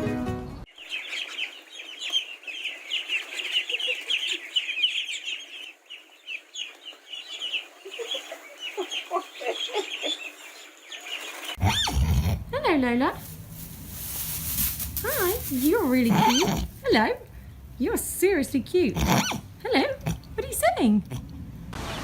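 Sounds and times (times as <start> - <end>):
hen clucking: 7.4 - 10.5, 13.1 - 17.3.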